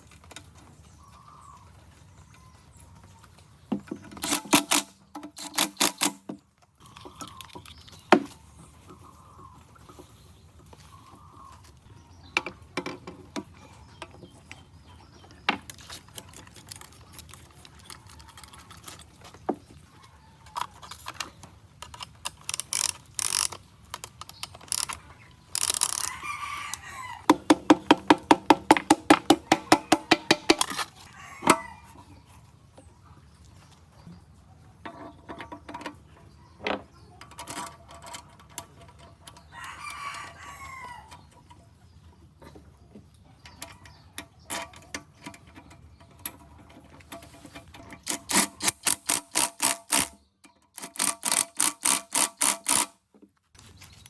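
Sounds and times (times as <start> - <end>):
rapid mechanical clicks: 4.1 - 6.3, 20.6 - 30.7, 48.0 - 53.0
rooster crowing: 26.0 - 27.4, 29.4 - 32.1, 39.5 - 41.1.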